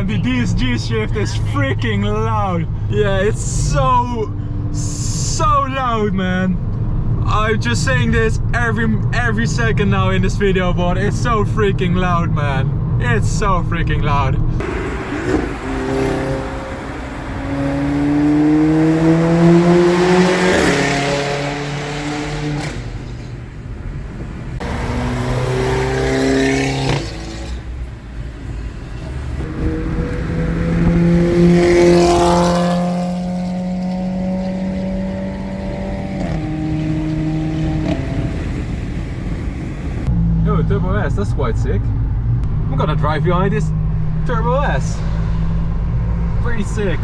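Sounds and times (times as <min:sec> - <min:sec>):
car engine accelerating hard: 0:14.6 - 0:40.9.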